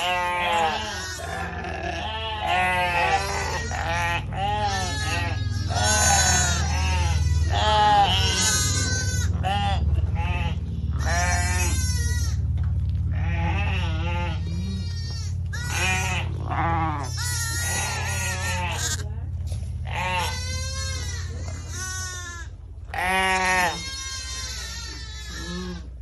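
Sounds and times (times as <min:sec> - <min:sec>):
sheep and lambs bleating: 0:00.0 - 0:26.0.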